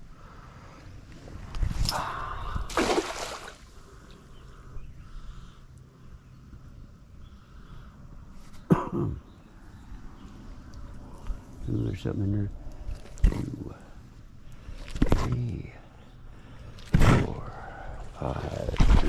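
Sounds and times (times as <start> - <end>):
water splashing and dripping: 2.7 - 3.6.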